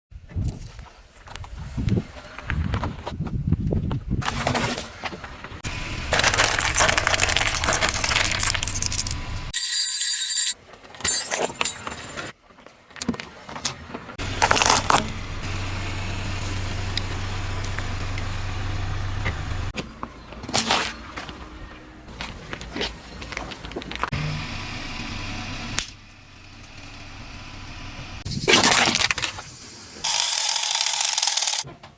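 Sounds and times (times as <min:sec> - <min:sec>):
objects crunching under tyres: 0:04.2 - 0:09.5, 0:13.0 - 0:21.4, 0:24.8 - 0:30.1
car engine running: 0:05.6 - 0:09.5, 0:14.2 - 0:19.7, 0:24.1 - 0:28.3.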